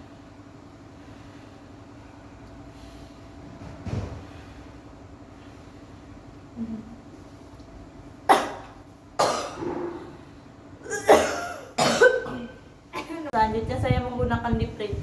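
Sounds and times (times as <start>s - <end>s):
person coughing: 8.3s - 9.8s, 10.8s - 13.2s.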